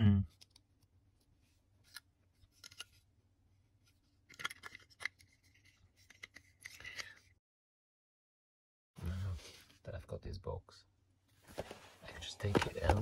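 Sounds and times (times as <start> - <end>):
clicks and scrapes of handling: 1.8 - 3.1, 3.8 - 7.4.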